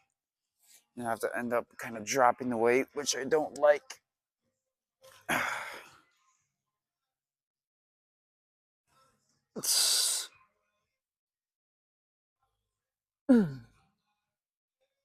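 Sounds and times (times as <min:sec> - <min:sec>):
man groaning: 0:13.3 - 0:13.6.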